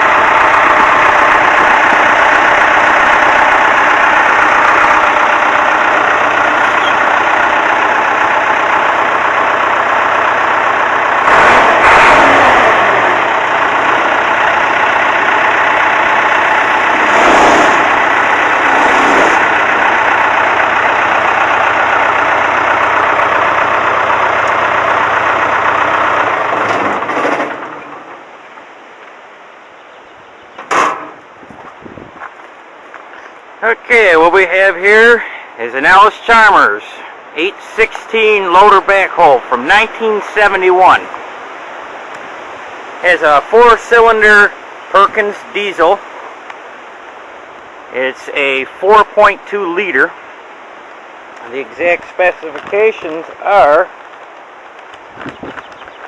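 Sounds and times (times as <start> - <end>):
diesel engine running: 0.0 - 56.0.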